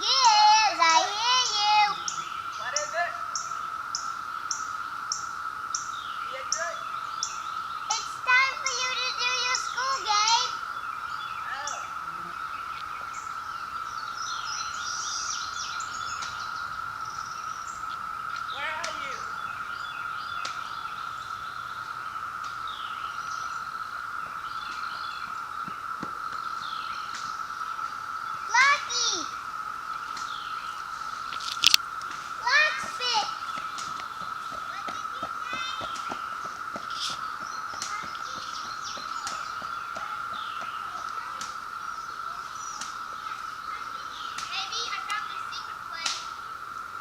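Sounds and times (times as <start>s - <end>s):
child's voice: 0.0s - 2.1s, 7.9s - 10.6s, 28.5s - 29.3s, 32.4s - 33.4s, 34.6s - 36.0s, 43.2s - 46.2s
birds chirping: 0.0s - 47.0s
cicada chorus droning: 0.0s - 47.0s.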